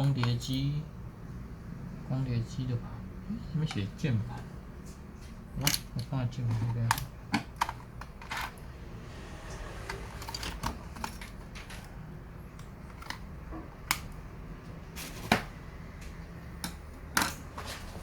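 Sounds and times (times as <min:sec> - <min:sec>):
laptop parts clicking: 0:09.9 - 0:14.3, 0:15.3 - 0:17.5.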